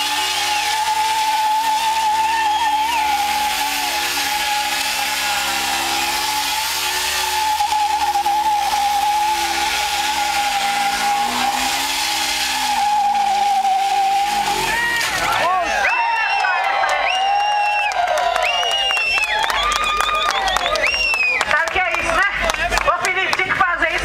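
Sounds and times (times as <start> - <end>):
motorcycle engine revving high: 0.0 - 16.1.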